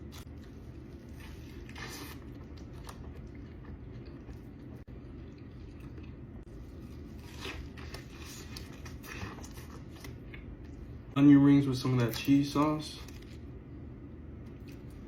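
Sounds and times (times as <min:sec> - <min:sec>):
person chewing and biting: 0:00.0 - 0:10.8.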